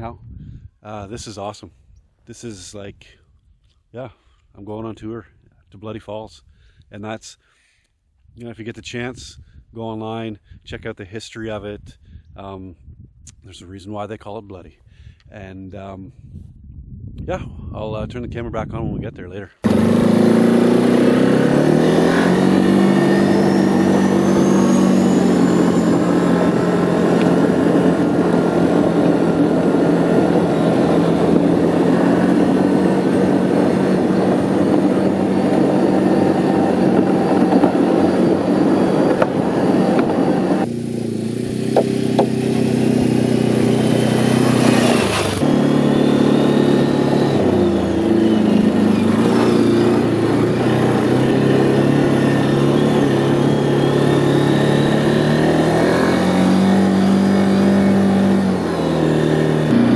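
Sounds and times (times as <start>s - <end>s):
wind and trail noise: 0.0s - 7.1s, 7.9s - 59.9s
quad engine revving: 19.6s - 59.9s.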